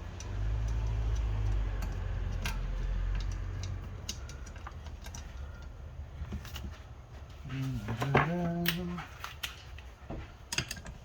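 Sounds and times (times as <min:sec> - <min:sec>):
metallic clicks of gears: 0:00.0 - 0:05.4.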